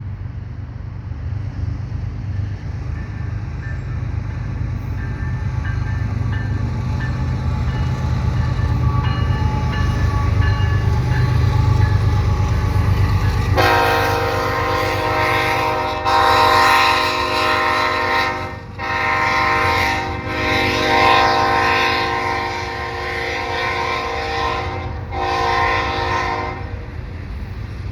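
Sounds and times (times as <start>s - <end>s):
diesel locomotive engine rumble: 0.0s - 27.9s
train air horn blast: 13.5s - 26.8s.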